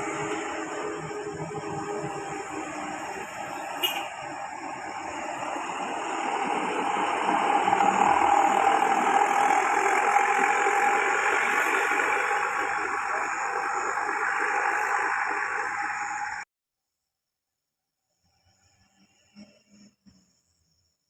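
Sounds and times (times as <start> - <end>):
heavy vehicle driving past: 0.0 - 16.4.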